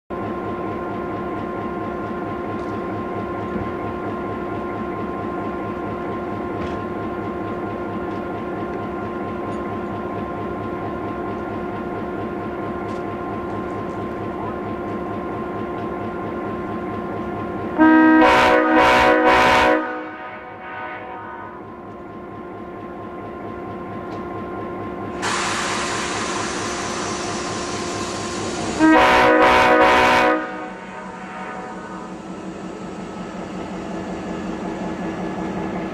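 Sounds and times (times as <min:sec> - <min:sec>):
diesel locomotive idling: 0:00.1 - 0:35.9
locomotive air horn: 0:17.8 - 0:21.6, 0:28.8 - 0:32.1.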